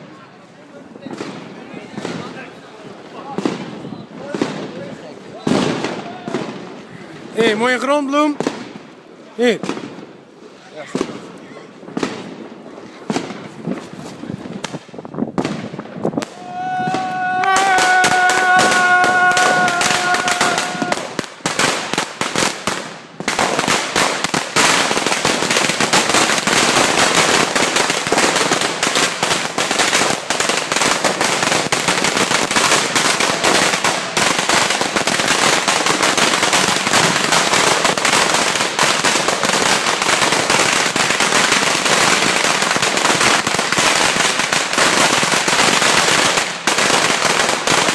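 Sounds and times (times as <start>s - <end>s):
firecrackers crackling: 0.0s - 47.9s
firecracker bangs: 10.9s - 47.9s.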